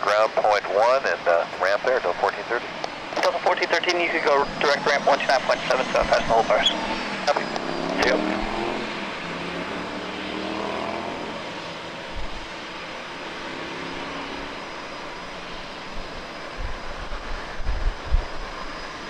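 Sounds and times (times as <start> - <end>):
jet engines running: 0.0 - 19.0.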